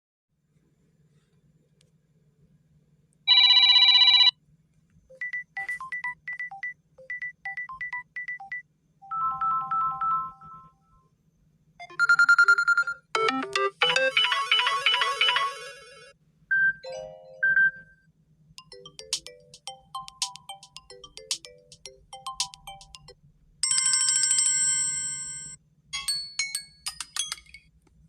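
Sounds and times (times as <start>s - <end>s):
buzzy ringtone: 3.3s - 4.3s, 11.8s - 18.0s, 18.6s - 25.6s
electronic ringtone melody: 5.3s - 10.8s, 11.8s - 18.0s, 18.6s - 25.6s
quick ringtone beeps: 11.9s - 15.7s, 18.6s - 23.1s.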